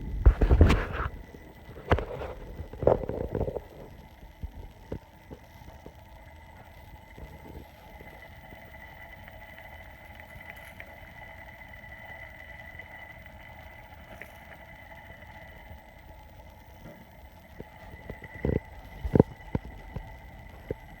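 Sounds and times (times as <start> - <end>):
low rumble: 0.0 - 5.2
faint ticks: 0.1 - 21.0.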